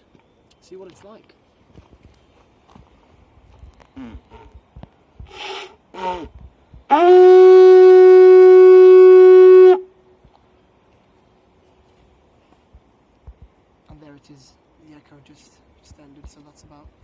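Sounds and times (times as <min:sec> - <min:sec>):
breathy puffs into horn: 0:05.2 - 0:06.3
horn blowing high clear note: 0:06.9 - 0:09.9.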